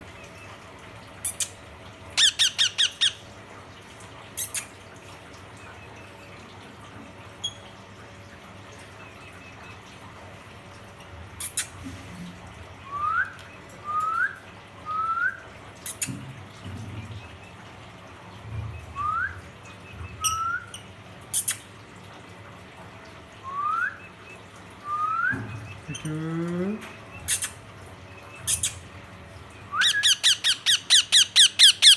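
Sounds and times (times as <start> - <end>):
parrot squawking: 2.2 - 3.2, 29.8 - 31.9
parrot whistling: 2.2 - 3.2, 20.2 - 20.8, 24.8 - 26.1, 29.7 - 31.9.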